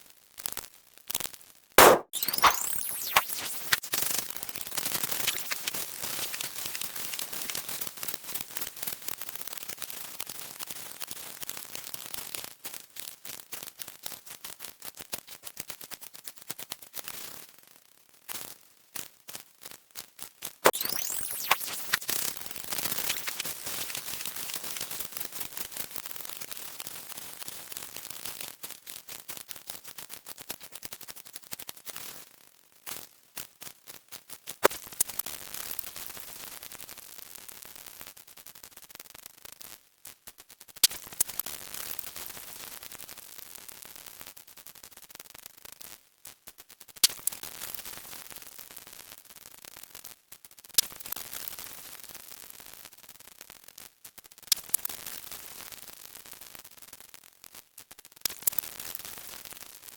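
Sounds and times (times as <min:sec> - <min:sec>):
loud crack: 0:01.8 - 0:03.3
electronic static crackling: 0:01.8 - 0:03.8, 0:20.6 - 0:24.6.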